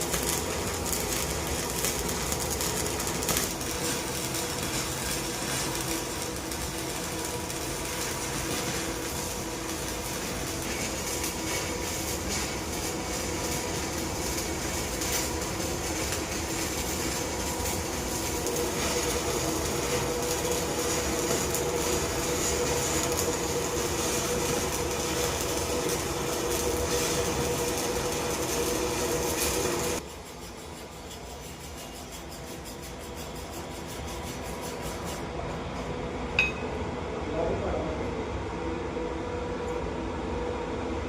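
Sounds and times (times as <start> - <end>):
welding arc crackling: 0.0 - 35.2
steady background noise: 0.0 - 41.0.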